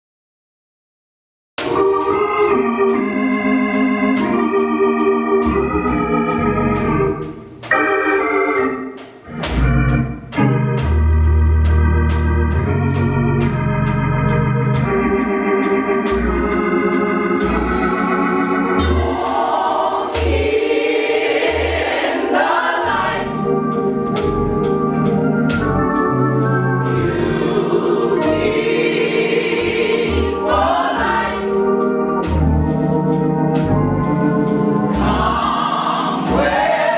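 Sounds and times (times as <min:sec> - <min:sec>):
organ chords: 0:01.6 - 0:36.9
drums and bass: 0:05.4 - 0:08.3, 0:09.0 - 0:31.6, 0:32.2 - 0:36.9
gospel choir singing: 0:15.3 - 0:36.9.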